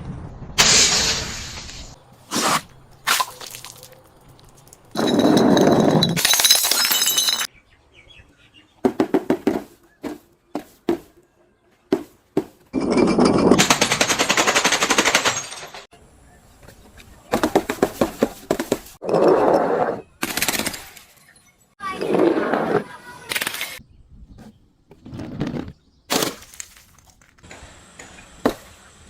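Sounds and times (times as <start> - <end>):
things crunching and crackling: 2.3 - 7.5, 25.0 - 27.4.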